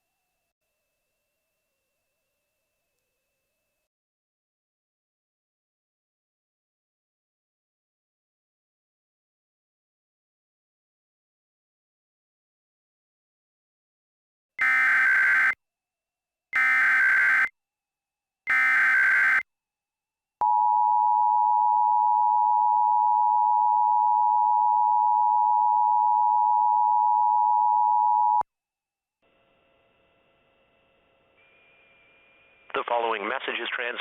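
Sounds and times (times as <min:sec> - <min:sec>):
data tone bursts: 0:14.6 - 0:15.6, 0:16.6 - 0:17.5, 0:18.5 - 0:19.4.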